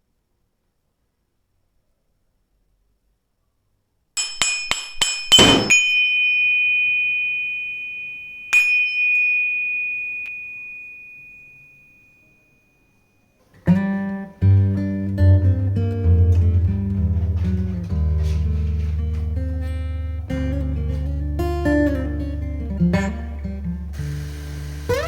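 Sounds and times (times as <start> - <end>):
metal object ringing when struck: 4.2 - 12.5
acoustic guitar music: 13.5 - 25.0.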